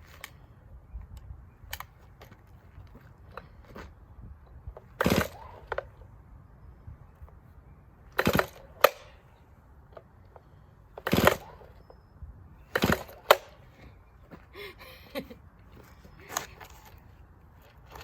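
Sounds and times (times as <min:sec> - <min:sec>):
chainsaw starter cord pulls: 0:05.0 - 0:05.9, 0:08.2 - 0:09.0, 0:11.0 - 0:11.6, 0:12.7 - 0:13.6.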